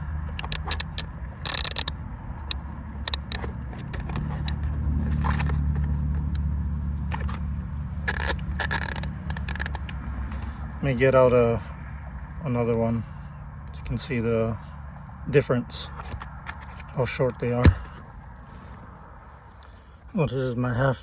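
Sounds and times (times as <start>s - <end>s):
scraping and rustling: 0.0s - 1.9s, 2.5s - 10.6s
metal hand tools clinking: 0.4s - 1.9s, 3.0s - 4.6s, 8.1s - 10.0s.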